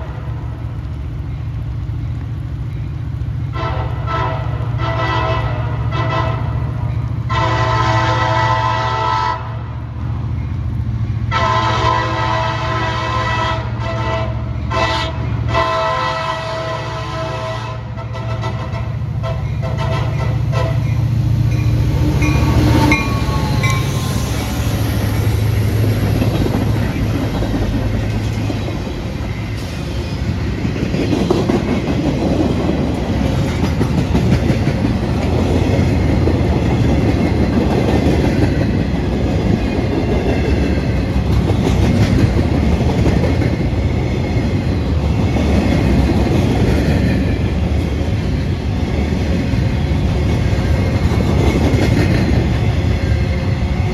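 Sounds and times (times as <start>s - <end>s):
locomotive engine drone: 0.0s - 53.9s
diesel train horn: 3.4s - 10.0s, 11.2s - 24.9s
train wheels clacking on rails: 18.2s - 53.9s.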